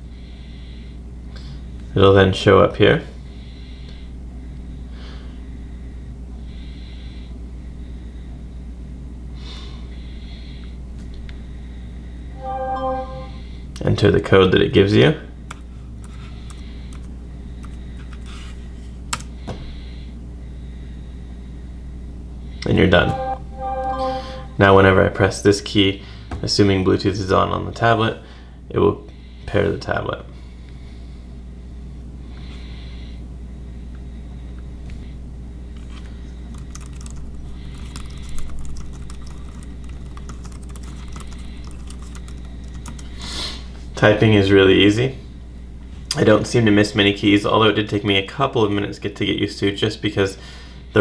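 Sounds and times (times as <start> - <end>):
steady low hum: 30.2 - 47.2.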